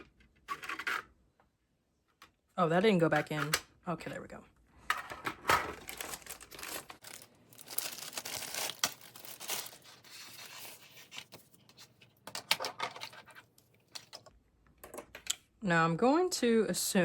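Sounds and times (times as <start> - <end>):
plastic packaging rustling and tearing: 5.6 - 12.0.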